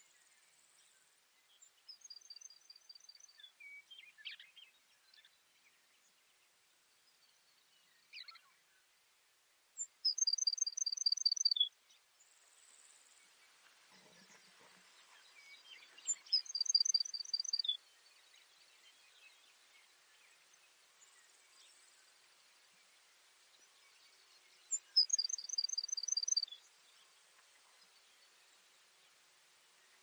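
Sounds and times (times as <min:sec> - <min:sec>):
sparrow singing: 0:09.8 - 0:11.7, 0:14.0 - 0:21.8, 0:23.6 - 0:28.4.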